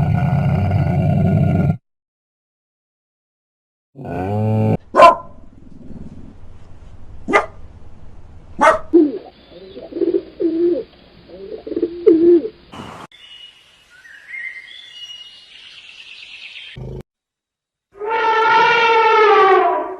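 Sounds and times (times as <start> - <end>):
low wavering cooing calls: 9.0 - 12.7.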